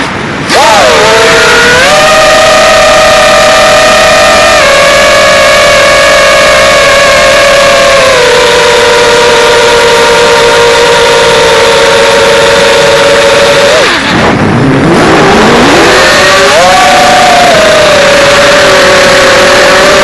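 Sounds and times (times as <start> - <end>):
quadcopter motors whining: 0.5 - 14.2, 15.0 - 20.0.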